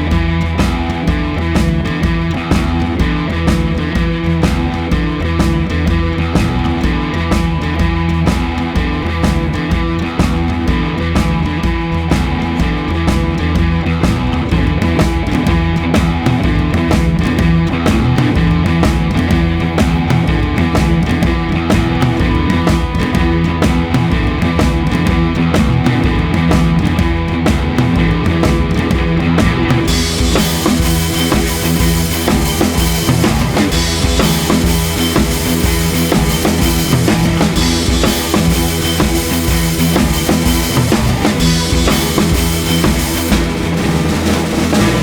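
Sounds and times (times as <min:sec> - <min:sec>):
drum kit beat: 0:00.0 - 0:45.0
rock music: 0:00.0 - 0:45.0
cymbals: 0:29.4 - 0:45.0.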